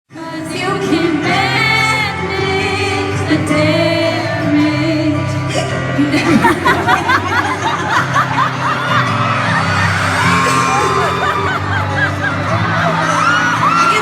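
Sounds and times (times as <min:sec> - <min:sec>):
woman singing with vibrato: 0:00.1 - 0:07.0
band playing chords: 0:05.8 - 0:14.0.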